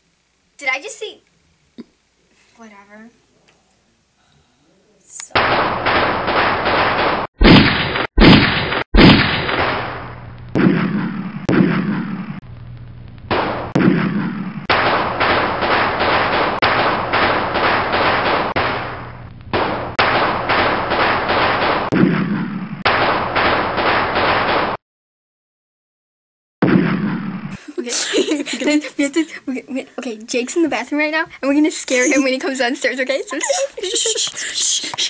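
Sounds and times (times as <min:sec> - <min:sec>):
rapid gunfire bursts: 0:13.3 - 0:18.9.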